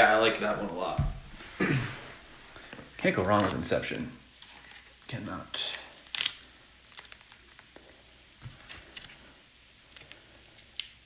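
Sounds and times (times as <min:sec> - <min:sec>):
card handling clicks and rustles: 0:03.1 - 0:09.2.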